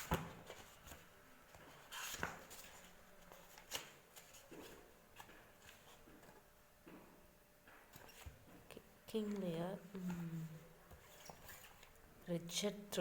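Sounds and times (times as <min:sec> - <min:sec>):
rustle of book pages: 0:00.0 - 0:06.5, 0:10.9 - 0:12.0
books tapping and knocking: 0:00.0 - 0:08.7.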